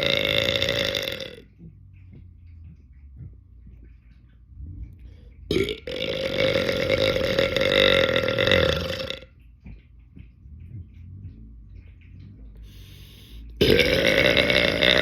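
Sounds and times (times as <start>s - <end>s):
person belching: 0.0s - 1.5s, 5.5s - 9.3s, 13.6s - 15.0s.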